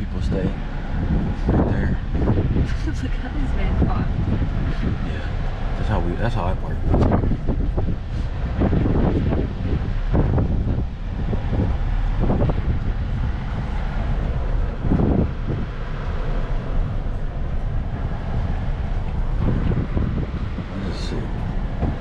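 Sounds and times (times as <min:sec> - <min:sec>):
car cabin road noise: 0:00.0 - 0:22.0.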